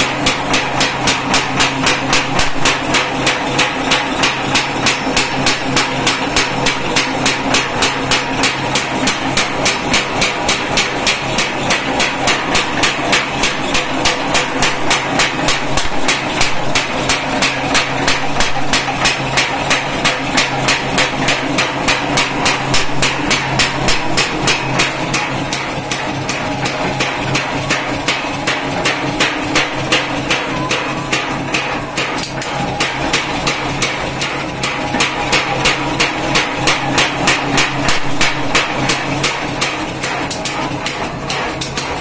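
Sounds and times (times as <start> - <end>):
power hammer striking: 0.0 - 42.0.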